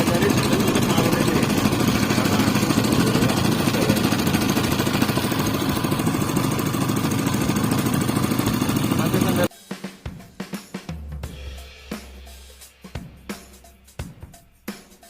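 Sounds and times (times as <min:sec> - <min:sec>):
boat engine chugging: 0:00.0 - 0:09.5.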